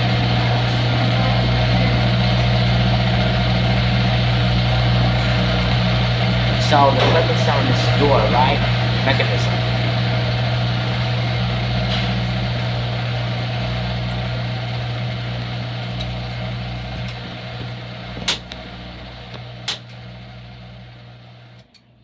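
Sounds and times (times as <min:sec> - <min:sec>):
low hum: 0:00.0 - 0:21.8
washing machine whirring: 0:00.0 - 0:22.0
sharp clicks: 0:18.2 - 0:18.6, 0:19.3 - 0:20.0.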